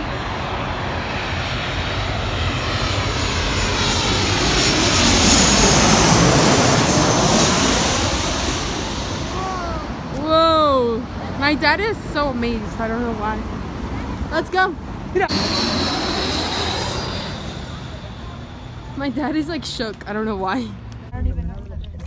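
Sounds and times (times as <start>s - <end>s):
airplane passing overhead: 0.0s - 21.5s.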